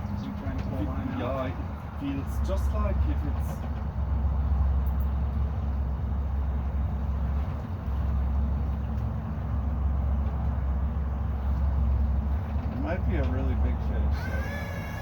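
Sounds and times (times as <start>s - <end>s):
boat motor humming: 0.0s - 15.0s.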